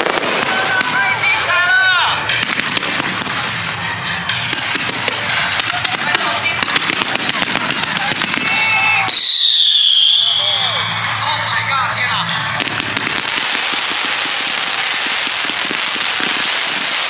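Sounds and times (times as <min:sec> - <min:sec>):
fireworks crackling pops: 0:00.0 - 0:01.6, 0:02.3 - 0:10.8, 0:12.6 - 0:17.0
rising and falling whistles: 0:09.1 - 0:11.0.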